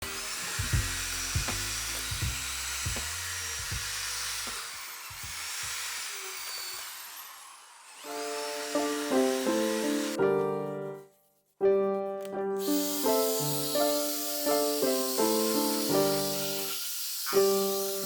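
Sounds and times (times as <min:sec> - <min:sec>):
wet vacuum cleaner motor whine: 0:00.0 - 0:10.2, 0:12.6 - 0:18.0
background music with a beat: 0:00.4 - 0:03.9
piano notes: 0:08.1 - 0:16.7.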